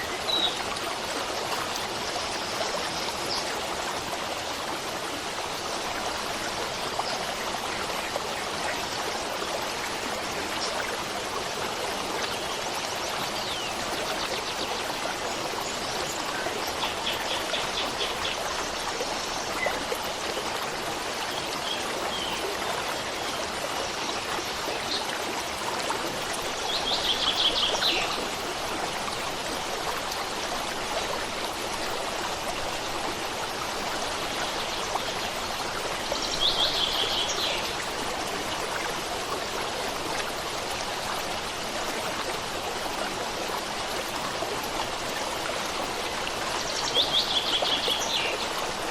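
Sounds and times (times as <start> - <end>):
stream flowing: 0.0 - 48.9.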